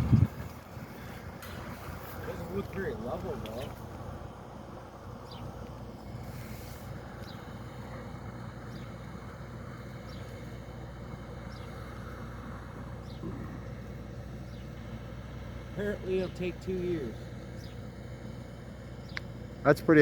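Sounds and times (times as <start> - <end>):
engine droning: 0.0 - 20.0.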